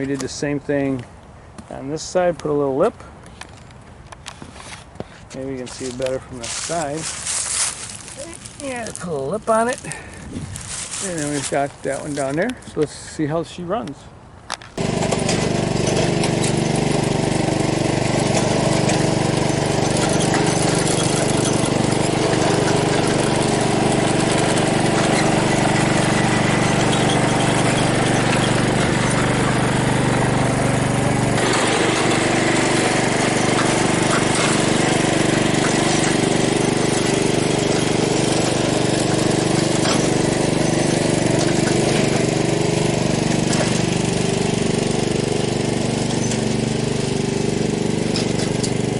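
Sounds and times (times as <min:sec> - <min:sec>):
small gasoline engine running: 0:14.8 - 0:48.9.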